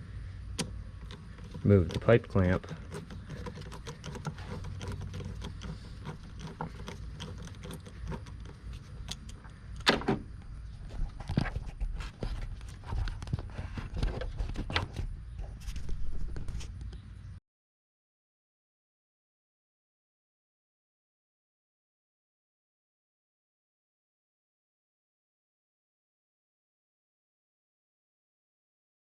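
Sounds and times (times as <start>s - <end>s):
clicks and knocks of metal clamp: 0.6s - 10.2s.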